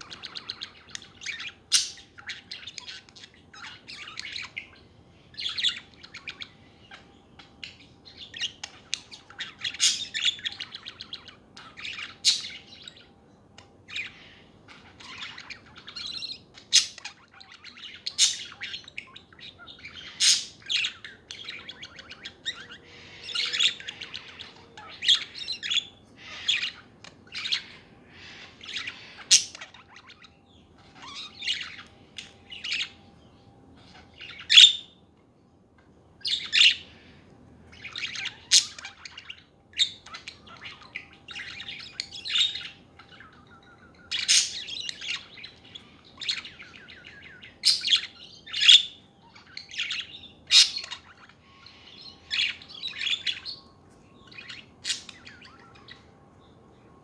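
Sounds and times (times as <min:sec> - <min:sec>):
budgerigars chattering: 0:00.0 - 0:33.1, 0:33.7 - 0:35.0, 0:36.2 - 0:56.2
sharp loud bird calls: 0:00.0 - 0:35.0, 0:36.2 - 0:57.0.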